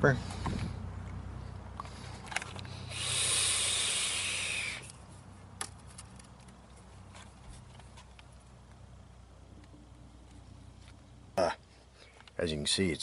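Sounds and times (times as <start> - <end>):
steady low hum: 0.0 - 13.0
vapor hissing through hose: 2.9 - 4.9.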